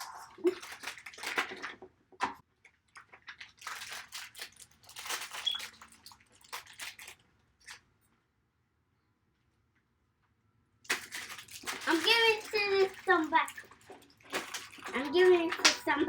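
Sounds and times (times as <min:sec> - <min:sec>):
plastic wrapping crinkling and tearing: 0:00.0 - 0:01.9, 0:02.7 - 0:07.8, 0:10.9 - 0:16.0.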